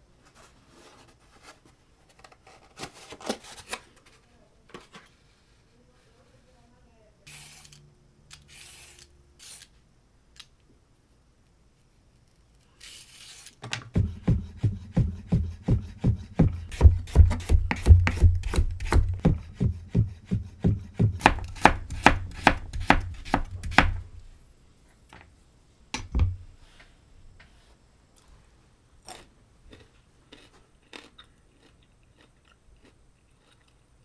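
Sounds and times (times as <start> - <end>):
knocks on cutting board: 14.0 - 24.1
knife chopping on cutting board: 14.0 - 24.2.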